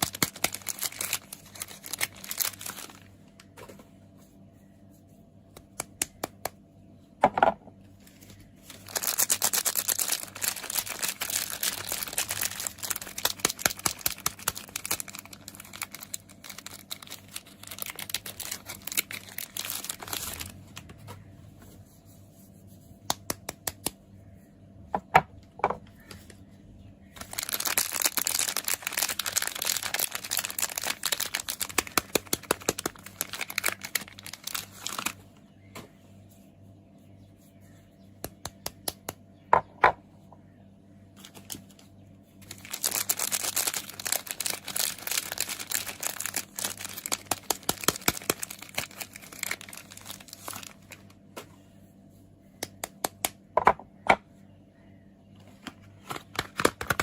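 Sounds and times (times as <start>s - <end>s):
wrapper crinkling and tearing: 0.0s - 3.3s, 8.0s - 21.0s, 27.2s - 35.2s, 41.2s - 41.8s, 42.4s - 51.2s, 56.0s - 57.0s.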